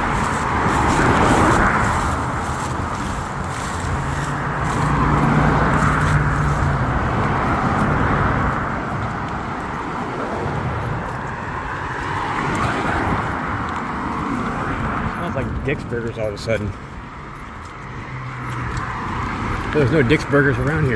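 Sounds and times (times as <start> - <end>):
cars passing: 0.0 - 20.9
low engine hum: 0.0 - 20.9.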